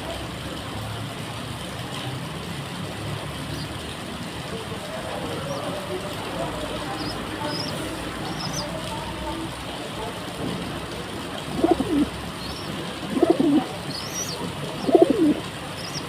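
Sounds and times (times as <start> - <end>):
pigeons cooing: 5.0 - 9.4, 11.0 - 16.0
small birds chirping: 6.4 - 9.2, 11.5 - 16.0.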